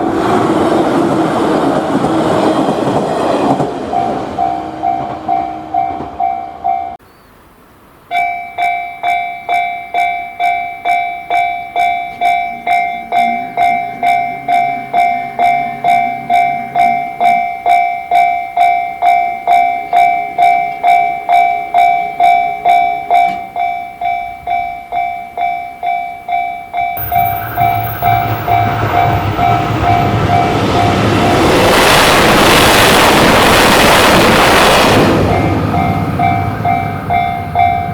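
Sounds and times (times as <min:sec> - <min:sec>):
train rumbling: 0:00.0 - 0:07.0, 0:27.0 - 0:37.9
level crossing warning bell ringing: 0:03.9 - 0:07.0, 0:08.1 - 0:37.9.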